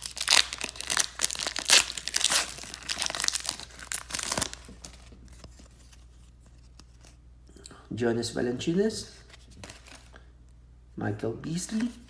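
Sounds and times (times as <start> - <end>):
foil wrapper tearing and crinkling: 0.0 - 5.0.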